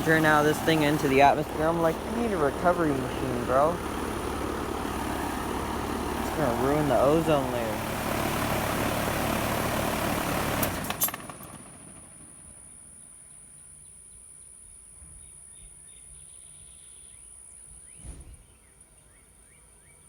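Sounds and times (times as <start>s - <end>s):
air conditioner unit running: 0.0s - 11.1s.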